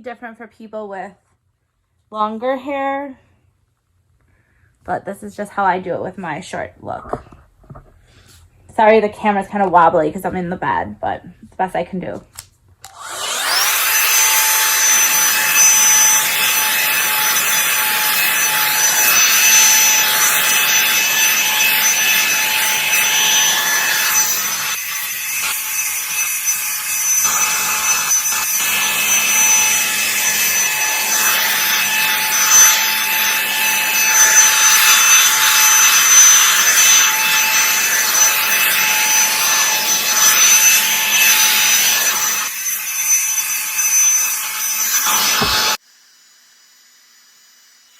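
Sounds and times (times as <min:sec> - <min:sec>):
hair dryer motor whine and airflow: 0:12.8 - 0:47.9.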